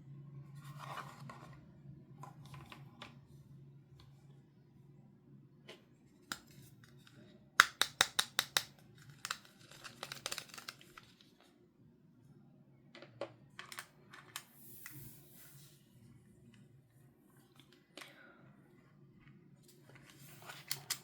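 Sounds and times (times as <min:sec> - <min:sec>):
plastic packaging clicks and taps: 0:07.6 - 0:10.8
plastic packaging crinkle: 0:09.0 - 0:11.3.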